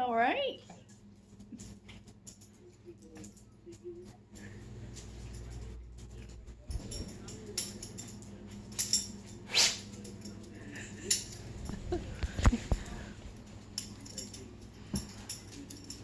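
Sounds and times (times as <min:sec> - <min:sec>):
pet sneezing: 0:09.5 - 0:10.0.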